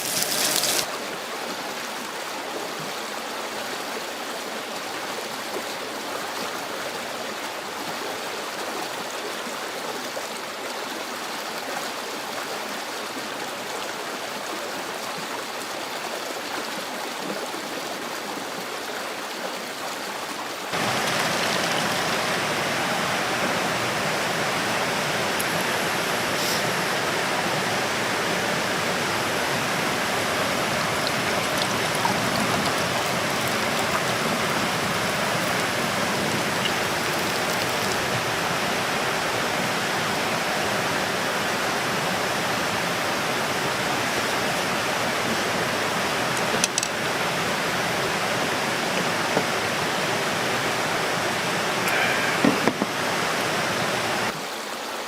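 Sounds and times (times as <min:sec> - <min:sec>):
rushing water: 0:00.0 - 0:55.0.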